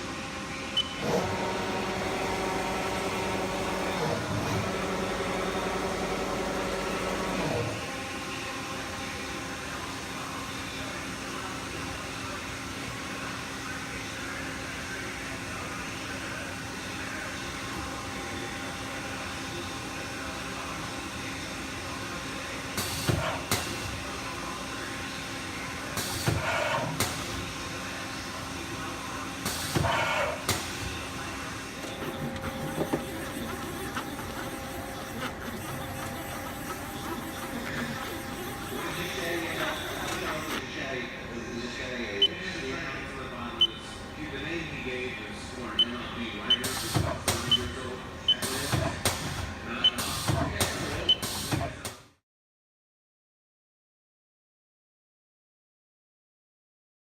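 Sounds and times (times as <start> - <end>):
lathe machine hum: 0.0 - 10.2, 26.4 - 45.7
short high beep: 0.8 - 1.0
hiss bursts with sharp clicks: 46.6 - 47.6.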